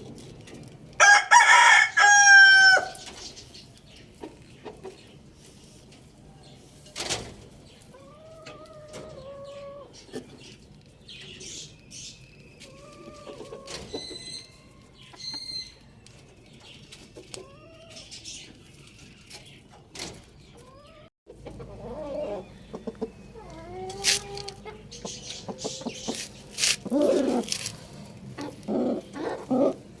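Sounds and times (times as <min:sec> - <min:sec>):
chickens clucking: 0:03.0 - 0:06.1, 0:07.4 - 0:11.6, 0:12.6 - 0:18.6, 0:20.6 - 0:30.0.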